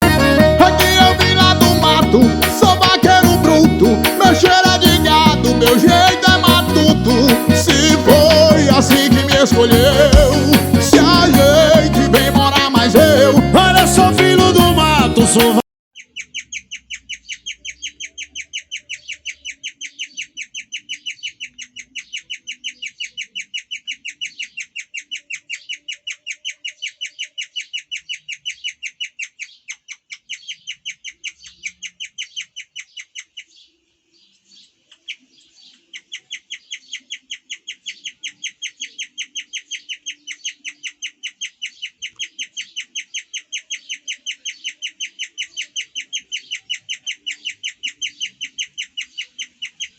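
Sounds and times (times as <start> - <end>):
guinea pig chirping: 15.9 - 49.9.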